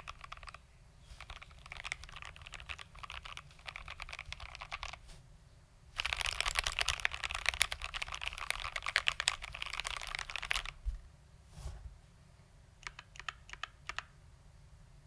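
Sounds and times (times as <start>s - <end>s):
mechanical keyboard typing: 0.0s - 0.6s, 1.2s - 5.0s, 6.0s - 10.8s, 12.8s - 14.1s.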